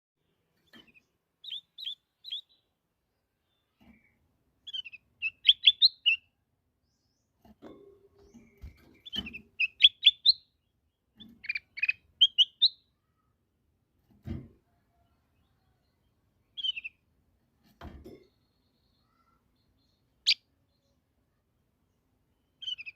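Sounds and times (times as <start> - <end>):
bulbul singing whistled notes: 1.4 - 2.6, 4.7 - 6.2, 9.1 - 10.5, 11.5 - 12.8.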